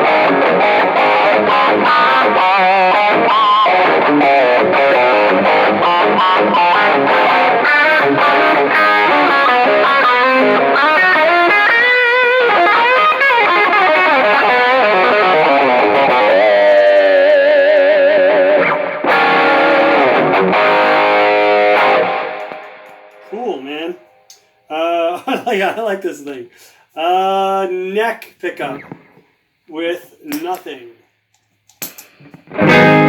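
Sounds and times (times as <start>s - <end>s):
overdriven electric guitar: 0.0s - 23.3s, 32.2s - 33.0s.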